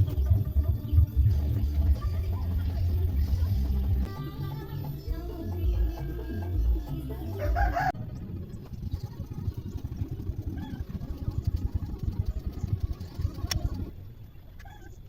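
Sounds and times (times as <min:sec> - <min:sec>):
bass-heavy music: 0:00.0 - 0:07.9
crackling low rumble: 0:00.0 - 0:15.0.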